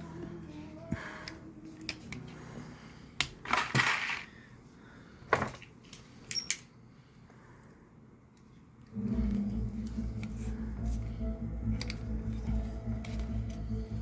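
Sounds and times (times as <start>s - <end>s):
small metal parts clicking: 6.2s - 6.7s.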